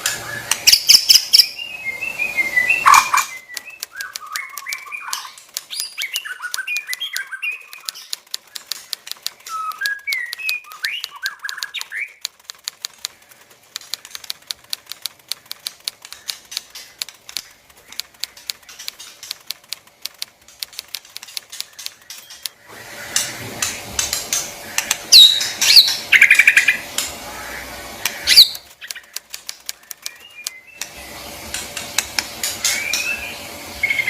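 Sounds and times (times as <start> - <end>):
bird clicking: 0.0 - 1.6, 2.8 - 33.2
wings rustling and fluttering: 2.2 - 34.0
sharp whistled bird notes: 9.5 - 12.1.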